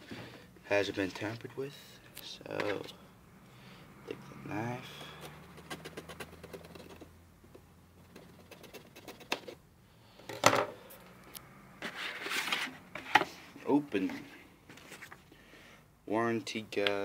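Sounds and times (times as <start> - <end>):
knife slitting tape: 5.2 - 7.0
cardboard scraping and rustling: 11.8 - 13.4.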